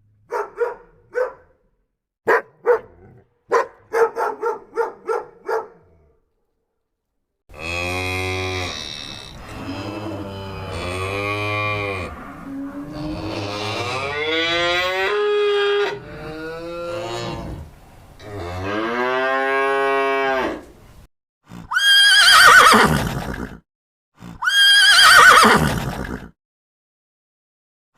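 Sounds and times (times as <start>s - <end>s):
cattle mooing: 7.5s - 20.6s
horse whinny: 21.5s - 23.6s, 24.2s - 26.3s.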